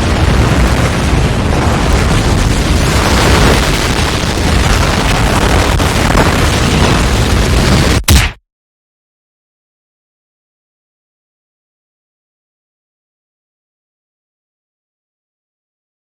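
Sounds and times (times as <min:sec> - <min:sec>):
rushing wind with low rumble: 0:00.0 - 0:08.1.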